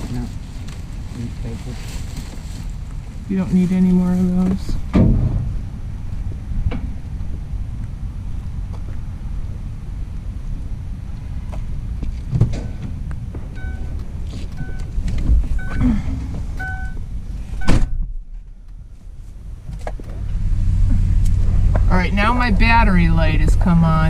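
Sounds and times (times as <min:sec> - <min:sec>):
van engine running: 0:00.0 - 0:24.0
door shutting with thud: 0:04.9 - 0:05.6, 0:17.6 - 0:18.1
warning chime beeping: 0:13.6 - 0:14.0, 0:14.6 - 0:14.9, 0:15.6 - 0:15.9, 0:16.6 - 0:17.0.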